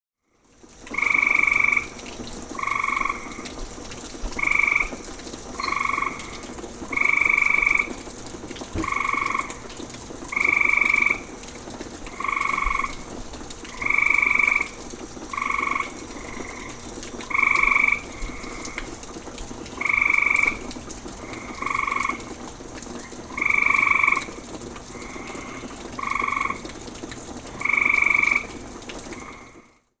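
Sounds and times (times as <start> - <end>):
faint frog calling: 0.2 - 3.7, 4.3 - 8.0, 8.8 - 9.6, 10.3 - 11.3, 12.1 - 13.0, 13.7 - 19.0, 19.8 - 22.4, 23.0 - 26.7, 27.6 - 29.9
frogs calling: 0.3 - 8.1, 8.8 - 9.7, 10.3 - 11.4, 12.1 - 13.0, 13.7 - 19.1, 19.8 - 22.4, 23.1 - 26.7, 27.6 - 29.7.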